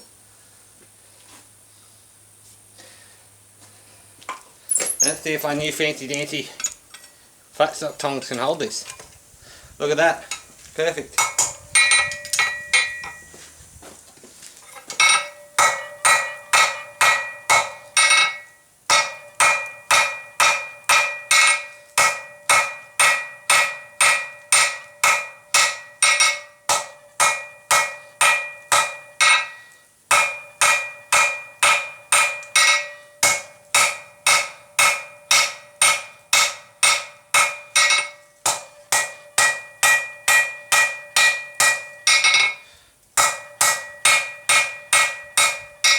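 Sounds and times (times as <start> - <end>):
hammer ringing on anvil: 11.2 - 13.3, 15.0 - 42.6, 43.2 - 45.9.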